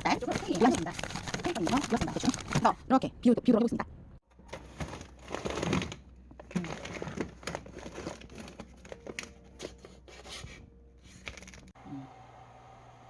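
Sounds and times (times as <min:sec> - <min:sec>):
plastic packaging crinkling: 0:00.0 - 0:02.8, 0:04.5 - 0:09.8.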